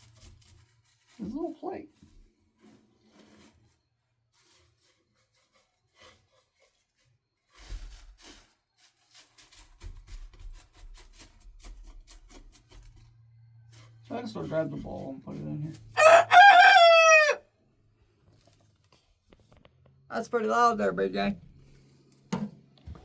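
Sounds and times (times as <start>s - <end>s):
rustling: 0.0s - 14.1s
scraping in a bowl: 0.0s - 17.0s.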